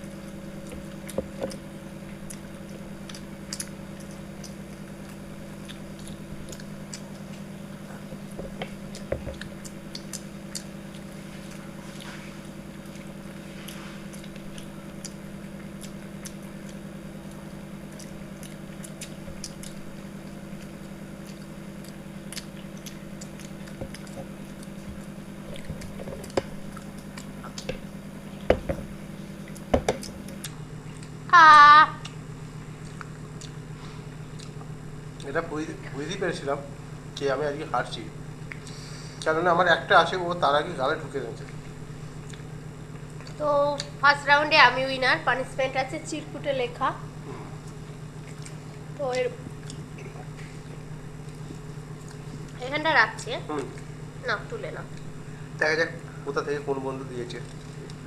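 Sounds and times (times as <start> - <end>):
people chewing and biting: 0.0 - 31.3, 31.9 - 35.6, 38.4 - 39.3, 41.4 - 44.0, 47.1 - 52.7, 53.5 - 54.1, 57.3 - 58.0
steady low hum: 0.0 - 58.0.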